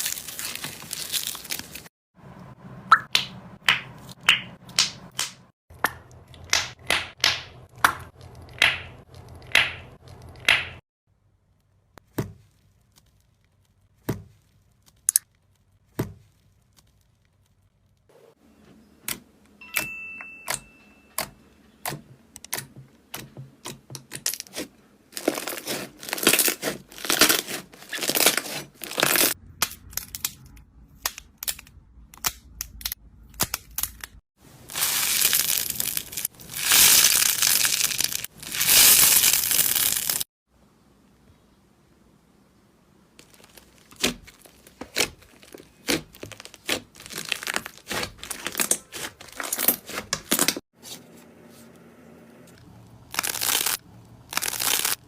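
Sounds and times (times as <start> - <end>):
crunchy slime crackling: 0.0 - 1.9, 24.5 - 29.4, 34.6 - 40.3, 43.2 - 50.6, 53.1 - 55.0.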